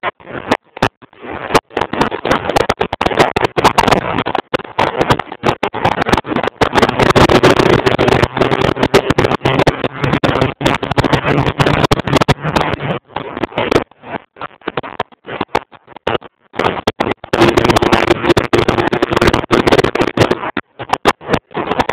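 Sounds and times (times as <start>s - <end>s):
wind buffeting on microphone: 1.6s - 13.9s, 16.6s - 20.4s.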